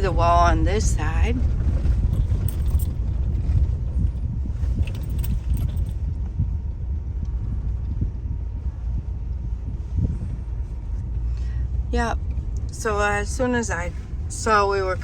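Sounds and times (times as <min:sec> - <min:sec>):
car driving rumble inside cabin: 0:00.0 - 0:15.0
light jingling rattle: 0:01.8 - 0:03.5, 0:04.6 - 0:06.0.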